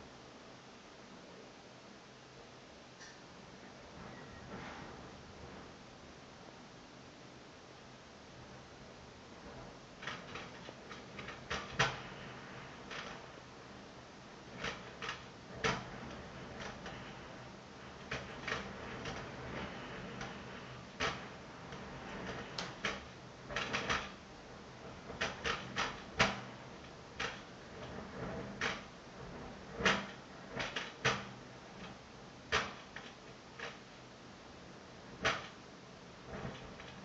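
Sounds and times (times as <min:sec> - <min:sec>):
ventilation grille clattering: 0:07.9 - 0:37.0.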